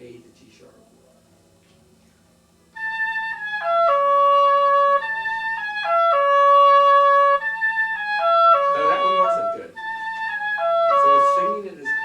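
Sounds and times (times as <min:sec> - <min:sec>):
oboe playing: 0:02.8 - 0:12.0.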